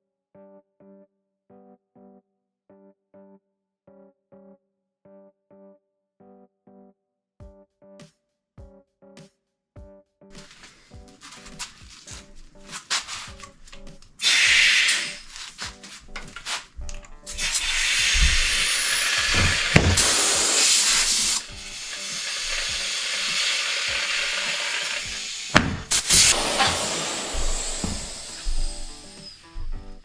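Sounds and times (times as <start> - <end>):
background music: 3.9 - 30.0
compressed air hissing into tire: 10.4 - 30.0.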